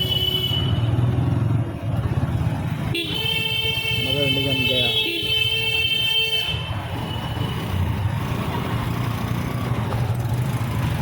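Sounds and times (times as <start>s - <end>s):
traffic rumble and road noise: 0.0s - 11.0s
vehicle horn: 2.9s - 6.7s.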